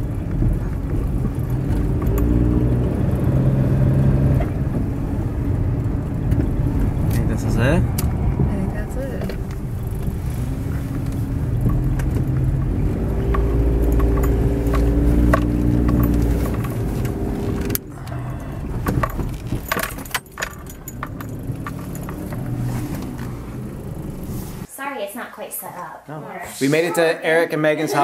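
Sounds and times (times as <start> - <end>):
car engine rumbling: 0.0 - 24.7
clicks and small rattles: 9.1 - 23.9.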